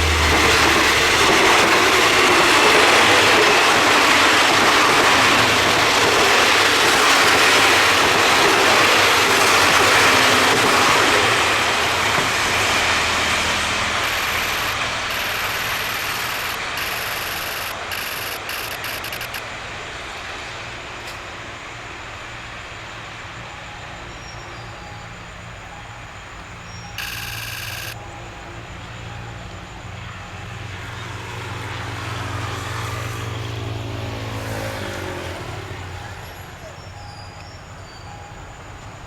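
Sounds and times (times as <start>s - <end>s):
diesel train rumbling: 0.0s - 27.0s
loud short burst: 13.2s - 19.5s.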